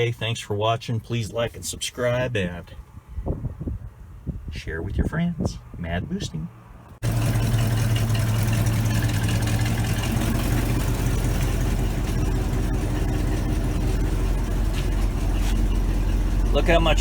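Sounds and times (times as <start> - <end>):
pickup truck engine running: 7.0 - 17.0.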